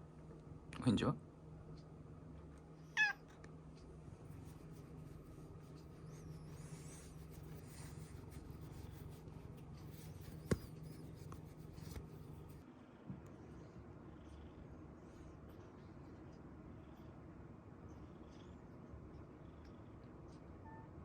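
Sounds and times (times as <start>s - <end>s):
rubbing and rustling: 4.2s - 12.6s
cat purring: 13.6s - 20.5s.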